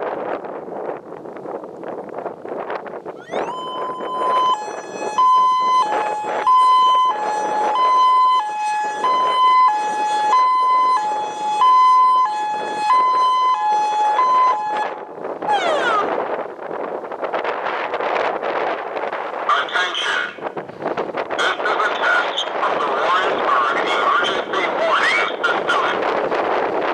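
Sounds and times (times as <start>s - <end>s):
wind buffeting microphone: 0.0s - 26.9s
two-pitch outdoor warning siren: 3.1s - 18.7s.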